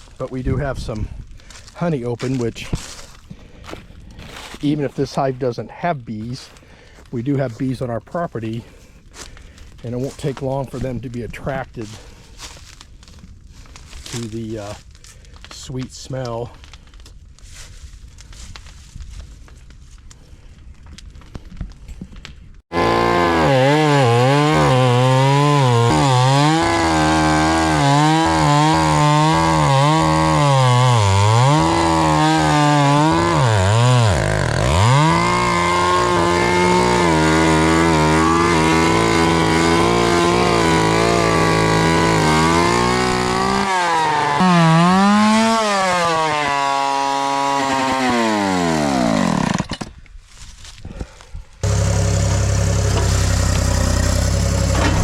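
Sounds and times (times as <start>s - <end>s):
chainsaw cutting wood: 22.7s - 50.0s, 51.6s - 55.0s
engine idling: 51.6s - 55.0s.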